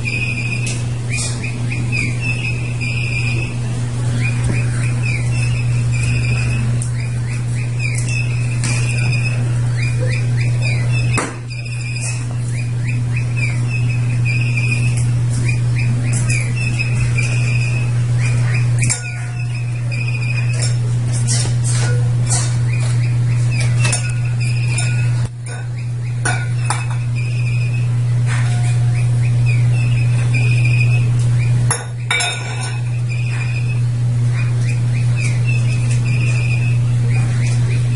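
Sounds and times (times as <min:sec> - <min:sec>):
electronic toy bird chirping: 0:00.0 - 0:20.7, 0:28.6 - 0:31.6, 0:32.8 - 0:37.9
steady low hum: 0:00.0 - 0:37.9.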